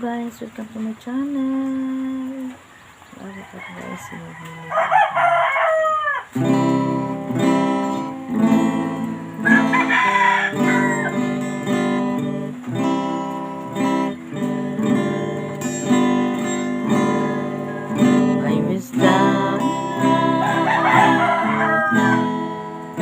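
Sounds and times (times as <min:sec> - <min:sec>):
rooster crowing: 0:03.2 - 0:06.6, 0:08.3 - 0:11.4, 0:17.4 - 0:23.0
acoustic guitar strumming: 0:06.3 - 0:23.0.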